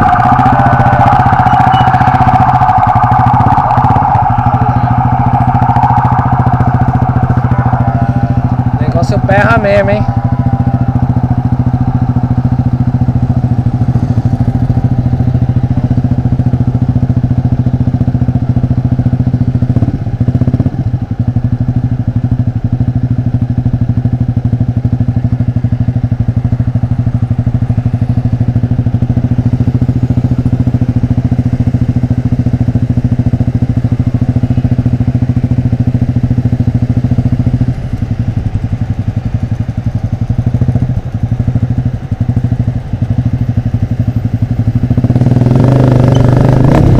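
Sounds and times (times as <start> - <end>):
motorcycle open exhaust engine: 0.0 - 46.9.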